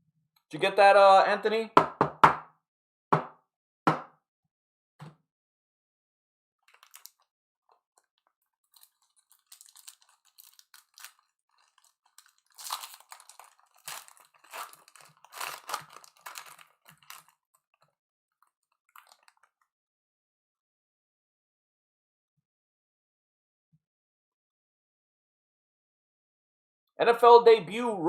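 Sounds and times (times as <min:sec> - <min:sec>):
plastic wrapper crinkling and tearing: 0:06.7 - 0:17.8, 0:18.5 - 0:19.5.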